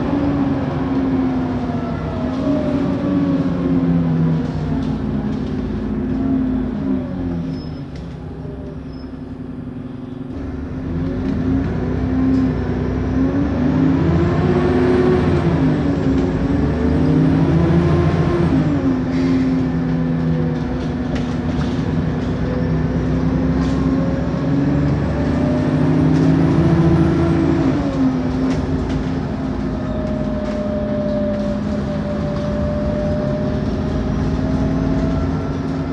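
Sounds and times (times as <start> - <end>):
bus diesel engine accelerating: 0.0 - 35.9.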